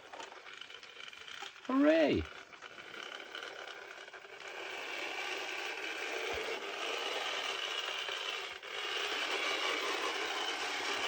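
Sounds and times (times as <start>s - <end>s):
model train motor whirring: 0.0s - 11.0s
wheels rubbing on rails: 2.4s - 11.0s.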